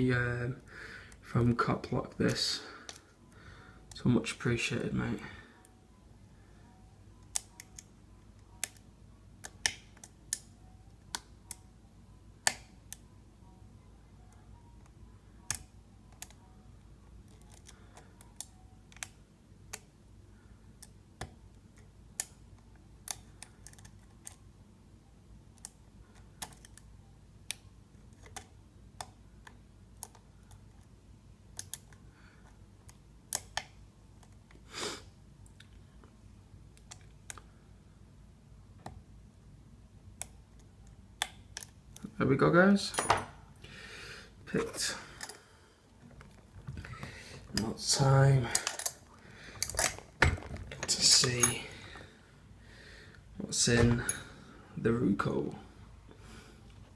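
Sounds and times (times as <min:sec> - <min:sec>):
faint low hum: 0:00.0 - 0:56.9
lock pick metallic clicks: 0:48.5 - 0:51.6.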